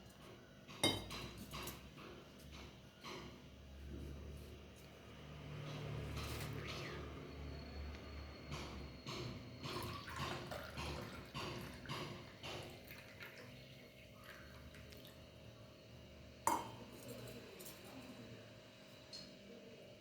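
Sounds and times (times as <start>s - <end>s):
liquid dripping and splashing: 9.6s - 15.3s.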